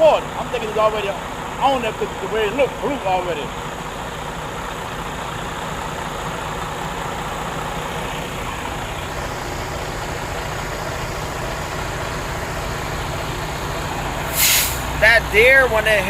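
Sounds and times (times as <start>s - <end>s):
truck engine idling: 0.0s - 16.0s
thin high hiss: 14.3s - 14.9s.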